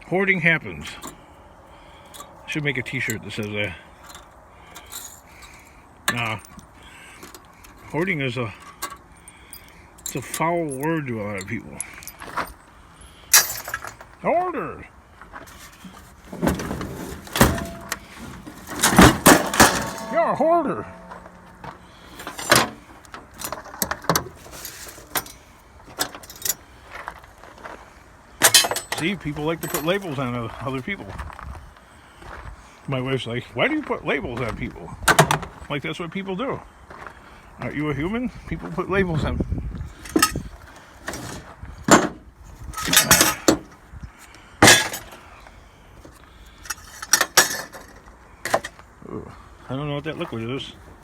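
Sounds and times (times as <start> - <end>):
scrap metal clinking: 4.0 - 14.1, 15.5 - 26.6, 28.4 - 30.2, 40.0 - 42.1, 42.7 - 43.8, 44.6 - 45.3, 46.5 - 48.8.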